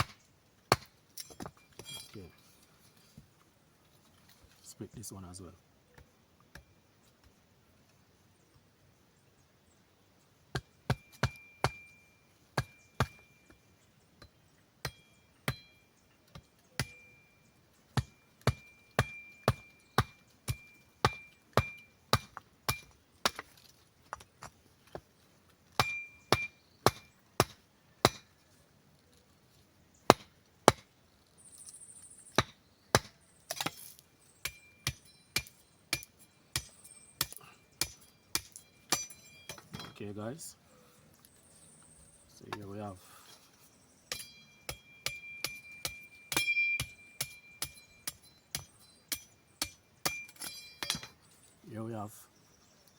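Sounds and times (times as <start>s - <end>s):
blade chopping wood: 0.0s - 1.9s, 18.0s - 24.4s, 25.8s - 28.3s, 30.1s - 30.9s, 32.4s - 40.0s.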